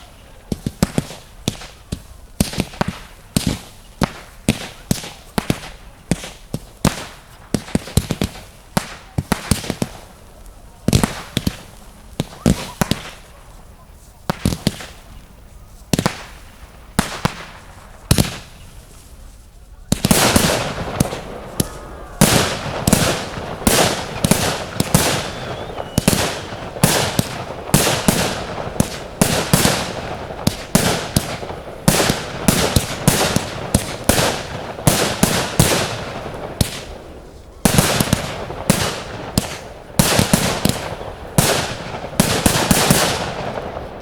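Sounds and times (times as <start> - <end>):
fireworks bangs: 0.0 - 44.0
fireworks crackling: 0.0 - 44.0.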